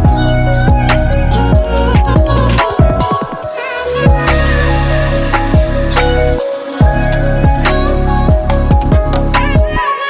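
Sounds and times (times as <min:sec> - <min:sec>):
electronic music with heavy bass: 0:00.0 - 0:10.0
kick-drum beat: 0:01.6 - 0:03.5.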